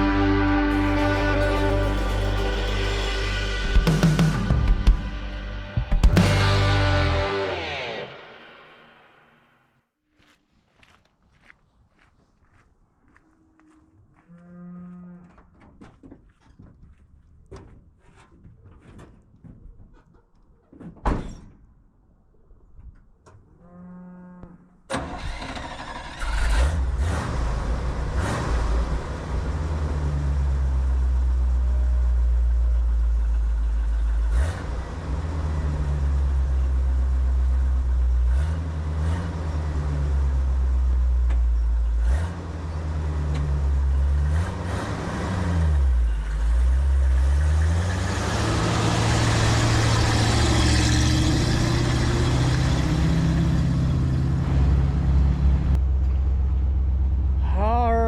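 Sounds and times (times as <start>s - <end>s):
vehicle engine running: 0.0s - 8.6s, 27.5s - 57.4s.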